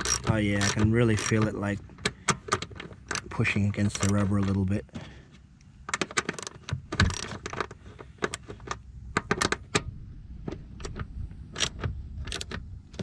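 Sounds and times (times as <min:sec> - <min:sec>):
wrench clicking metallically: 0:00.0 - 0:01.6, 0:03.1 - 0:04.2.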